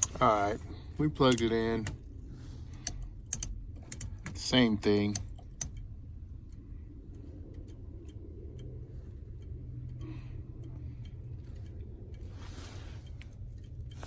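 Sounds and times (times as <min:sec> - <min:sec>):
faint irregular ticking: 0:00.0 - 0:14.0
low steady rumble: 0:00.0 - 0:14.0.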